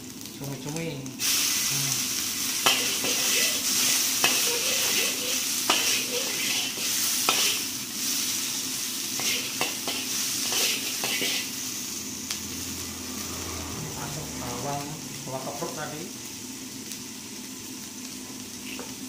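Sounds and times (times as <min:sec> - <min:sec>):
squid sizzling in a wok: 0:00.0 - 0:19.0
spatula knocking and scraping pan: 0:05.7 - 0:07.6.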